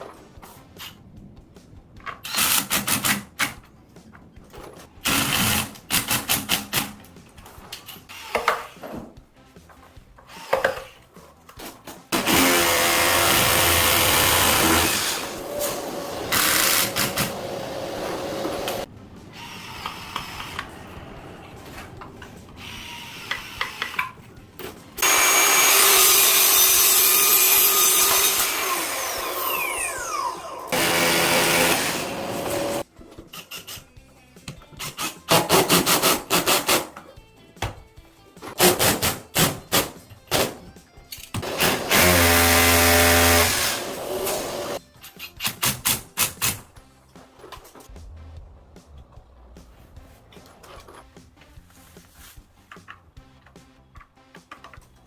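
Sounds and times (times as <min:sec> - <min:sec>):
power tool winding down: 0:12.2 - 0:18.8, 0:25.0 - 0:32.8, 0:41.4 - 0:44.8.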